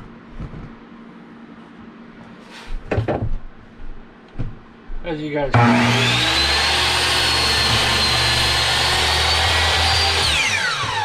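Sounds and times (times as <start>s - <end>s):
miter saw motor whine: 5.5s - 11.0s
saw blade spinning down: 5.6s - 11.0s.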